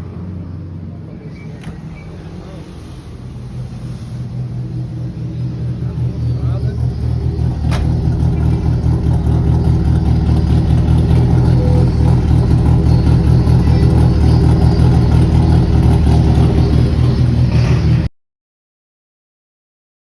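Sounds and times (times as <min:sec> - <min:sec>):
van engine low pulsing rumble: 0:00.0 - 0:18.1.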